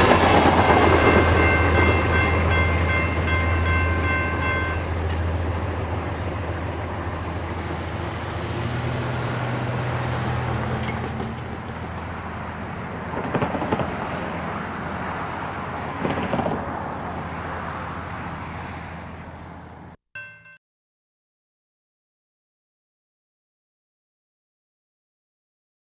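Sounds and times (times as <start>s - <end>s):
train clanking: 0.0s - 8.4s, 9.3s - 12.2s
locomotive rumble: 0.0s - 19.9s
rail and wheel noise: 0.0s - 20.6s.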